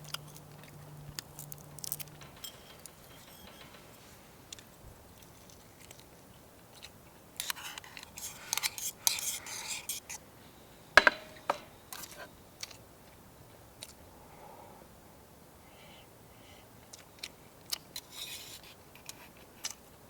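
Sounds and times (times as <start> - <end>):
crunchy chewing: 0.0 - 3.1
utensils clicking against a bowl: 0.0 - 4.7.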